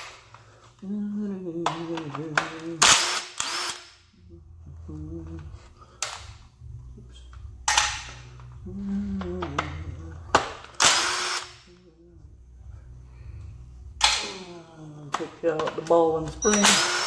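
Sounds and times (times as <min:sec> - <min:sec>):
power tool running in bursts: 0:10.8 - 0:11.5, 0:16.6 - 0:17.0.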